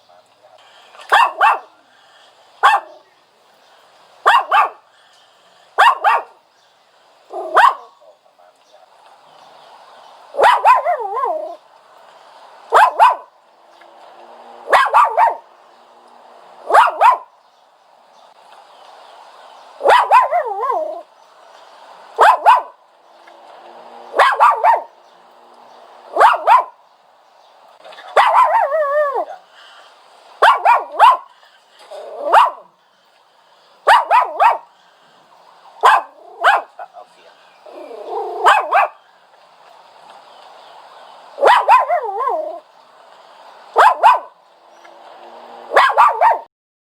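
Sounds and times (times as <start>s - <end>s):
dog whining and yelping: 10.4s - 11.6s, 19.8s - 21.1s, 28.0s - 29.4s, 31.9s - 32.6s, 37.7s - 39.0s, 41.4s - 42.6s, 45.8s - 46.5s.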